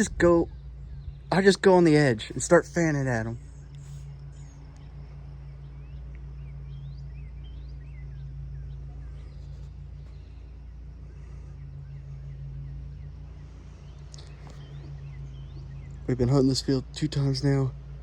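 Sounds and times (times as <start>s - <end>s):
small birds chirping: 0.0s - 18.0s
steady low hum: 0.0s - 18.0s.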